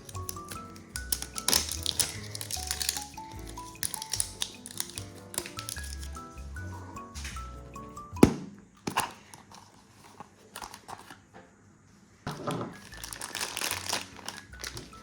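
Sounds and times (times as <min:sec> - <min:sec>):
wrapping snapping: 0:00.0 - 0:06.2, 0:12.7 - 0:15.0
wrapping crinkling: 0:00.0 - 0:07.4, 0:12.3 - 0:15.0
light music tune: 0:00.0 - 0:08.3, 0:12.7 - 0:15.0.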